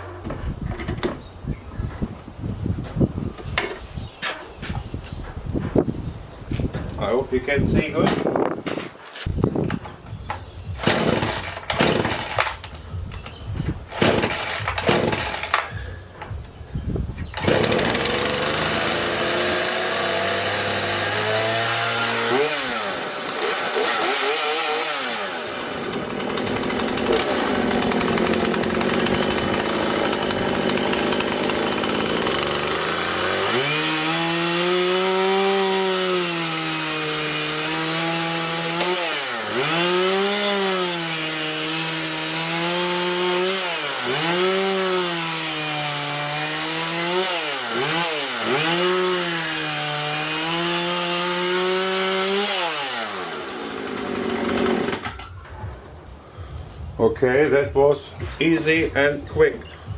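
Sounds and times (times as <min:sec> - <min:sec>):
chainsaw cutting wood: 0:07.7 - 0:16.6, 0:17.2 - 0:55.5
chainsaw engine running: 0:10.1 - 0:13.3, 0:13.9 - 0:16.4, 0:17.3 - 0:55.2.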